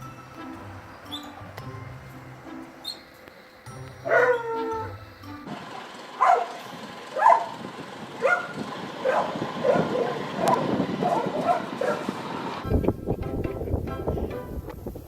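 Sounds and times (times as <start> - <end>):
dog barking: 4.0 - 4.9, 6.2 - 6.6, 7.2 - 7.6, 8.2 - 12.1.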